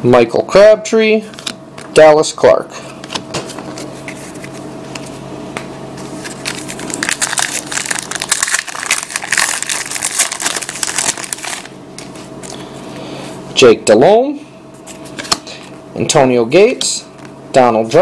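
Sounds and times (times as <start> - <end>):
plastic wrapper crinkling: 6.2 - 12.6.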